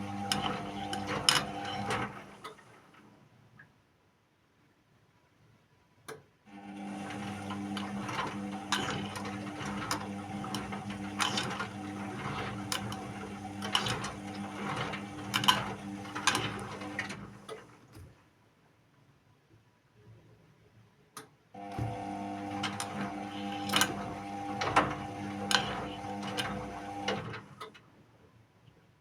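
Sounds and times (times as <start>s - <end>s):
washing machine motor humming: 0.0s - 2.4s, 6.6s - 17.5s, 21.6s - 27.4s.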